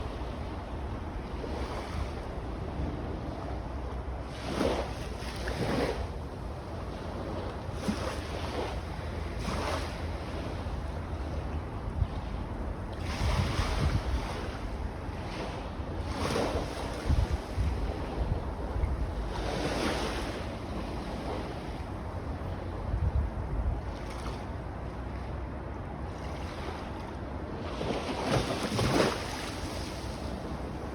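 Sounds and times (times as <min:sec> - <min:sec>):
wind buffeting microphone: 0:00.0 - 0:24.3
small waves lapping on beach: 0:00.0 - 0:30.9.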